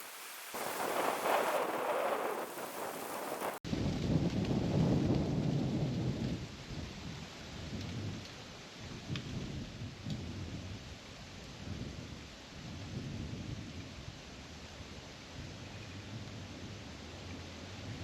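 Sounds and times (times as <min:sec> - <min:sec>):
steady hiss: 0:00.0 - 0:03.6
distant thunder rumbling: 0:00.5 - 0:06.2.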